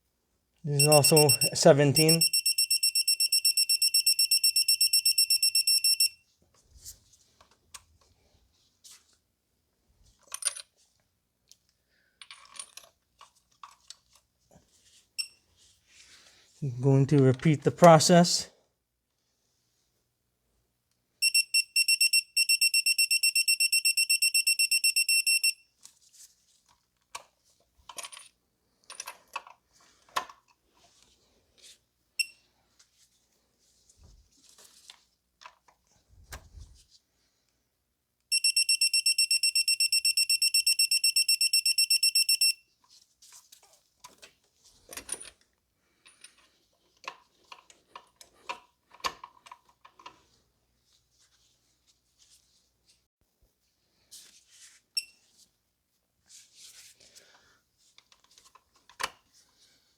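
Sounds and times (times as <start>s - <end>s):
torque wrench beeping rapidly: 0.8s - 6.1s.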